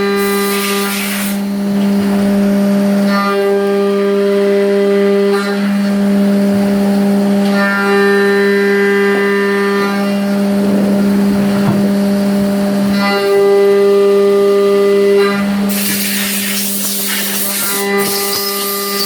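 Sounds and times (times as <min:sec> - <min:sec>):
milling machine whine: 0:00.0 - 0:15.8, 0:16.6 - 0:19.0
hiss: 0:00.2 - 0:01.4, 0:15.7 - 0:19.0.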